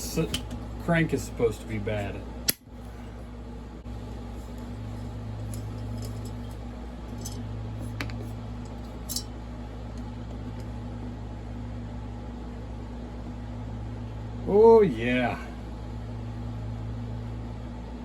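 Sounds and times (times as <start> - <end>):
steady low hum: 0.0 - 18.0
metal parts clicking and tapping: 5.4 - 7.4, 8.0 - 9.3.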